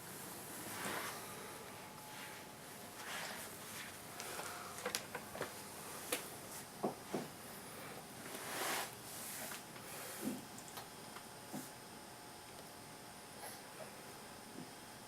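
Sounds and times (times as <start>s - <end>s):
soft rustles: 2.0s - 6.7s.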